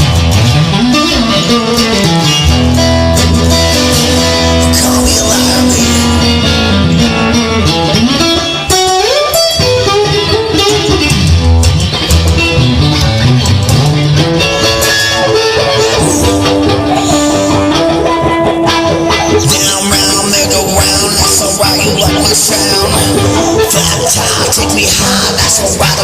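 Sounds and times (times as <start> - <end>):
low bass line: 0.0 - 10.2, 11.1 - 18.4
lead guitar: 0.0 - 26.0.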